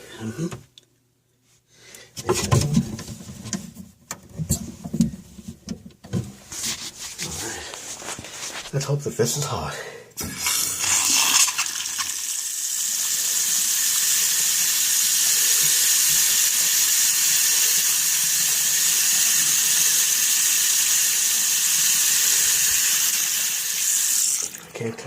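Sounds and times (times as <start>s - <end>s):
tap water streaming into basin: 10.2s - 25.0s.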